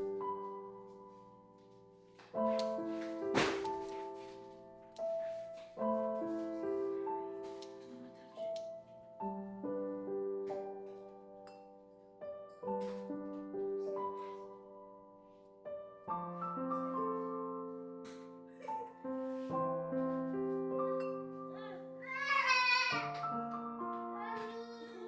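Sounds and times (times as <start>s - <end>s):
slow gentle piano music: 0.0s - 25.0s.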